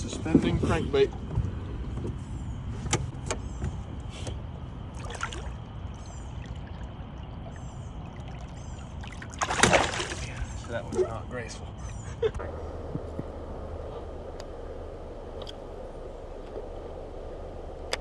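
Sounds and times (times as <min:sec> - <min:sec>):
wind and water rumble: 0:00.0 - 0:18.0
water trickling: 0:04.8 - 0:11.3.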